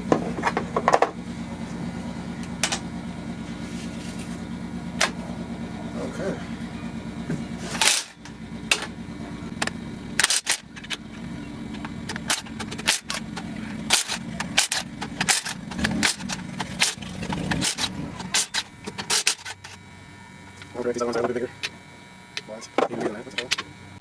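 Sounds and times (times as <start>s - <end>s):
steady low hum: 0.0s - 24.0s.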